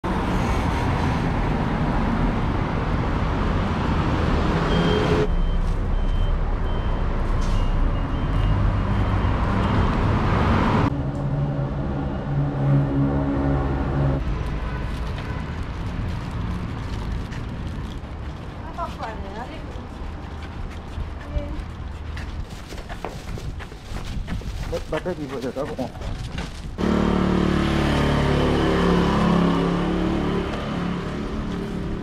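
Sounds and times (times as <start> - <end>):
road traffic noise: 0.0 - 32.0
engine hum: 26.7 - 32.0.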